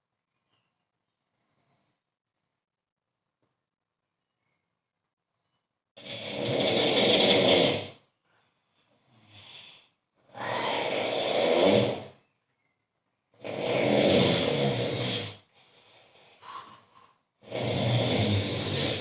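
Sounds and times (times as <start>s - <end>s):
man snoring loudly: 6.0s - 8.0s, 9.0s - 12.2s, 13.4s - 15.5s, 17.4s - 19.0s
soft breaths: 8.2s - 17.3s.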